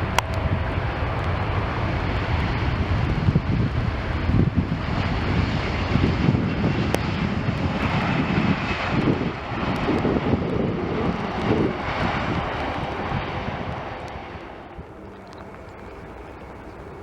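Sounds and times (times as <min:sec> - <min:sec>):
airliner engine roar: 0:00.0 - 0:17.0
wind buffeting microphone: 0:00.0 - 0:17.0.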